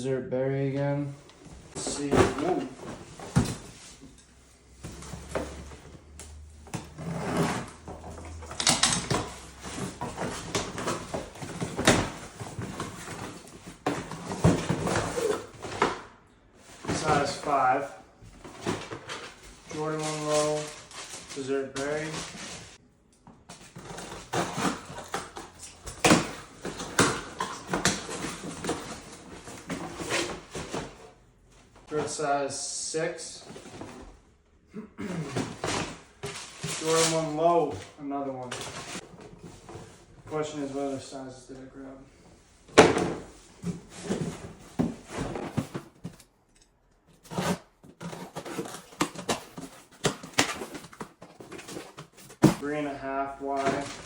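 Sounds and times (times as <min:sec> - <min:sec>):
paper and cardboard rustling: 0:01.5 - 0:04.2, 0:06.7 - 0:16.0, 0:16.6 - 0:22.8, 0:35.3 - 0:40.9, 0:42.6 - 0:46.3, 0:47.1 - 0:54.0.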